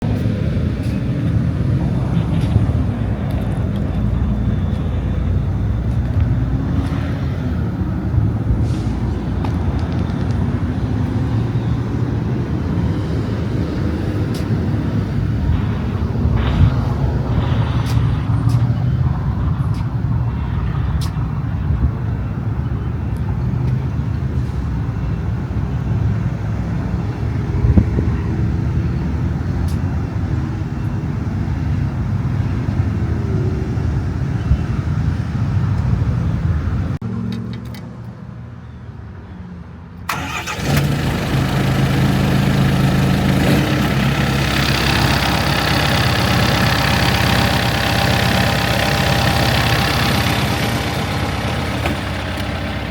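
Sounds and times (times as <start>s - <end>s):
diesel engine running: 0.0s - 19.4s, 40.1s - 52.9s.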